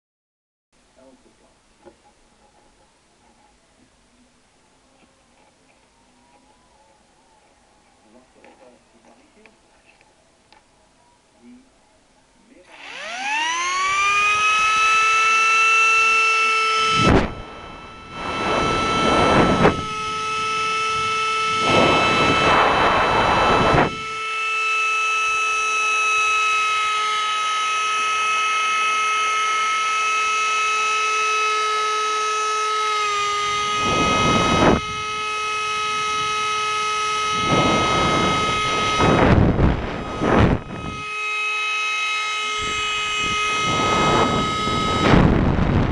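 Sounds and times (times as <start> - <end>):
blower high whine: 12.6 - 45.9
loud rushing air: 17.0 - 20.1, 21.5 - 24.0, 37.3 - 41.1.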